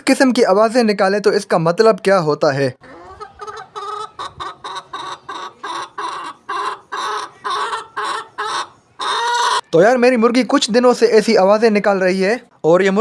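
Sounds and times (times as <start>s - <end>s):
hen clucking: 2.8s - 9.7s.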